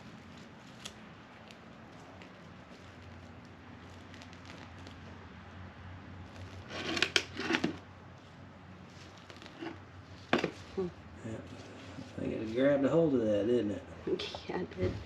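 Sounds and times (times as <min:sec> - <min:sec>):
loud crinkling: 0:00.0 - 0:05.2
plant pot rustling and scraping: 0:00.0 - 0:05.2, 0:06.2 - 0:10.9.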